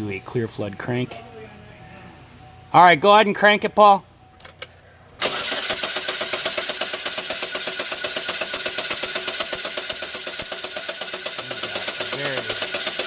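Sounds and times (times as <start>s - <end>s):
car engine cranking without starting: 4.5s - 13.0s.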